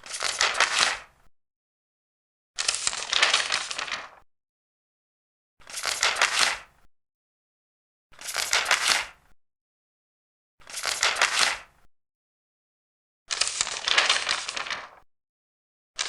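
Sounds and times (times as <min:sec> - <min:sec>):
paper pages turning: 0:00.0 - 0:01.1, 0:02.6 - 0:04.2, 0:05.6 - 0:06.7, 0:08.2 - 0:09.2, 0:10.6 - 0:11.7, 0:13.3 - 0:15.0.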